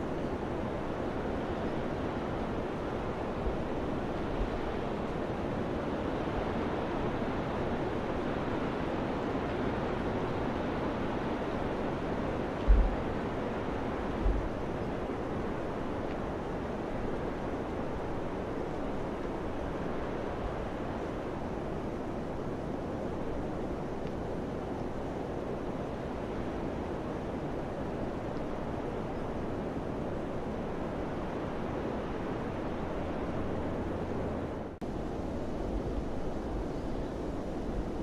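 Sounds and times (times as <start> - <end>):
wind blowing steadily: 0.0 - 38.0.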